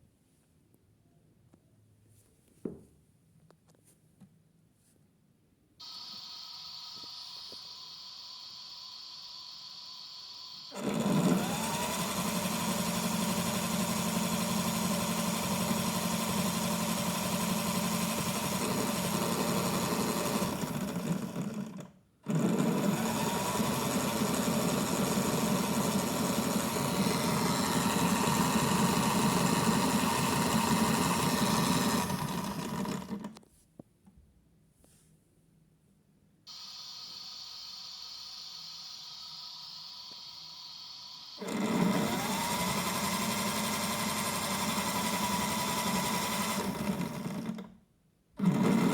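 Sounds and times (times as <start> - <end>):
small electric motor whining: 5.8 - 21.2, 22.5 - 33.3, 36.5 - 47.6.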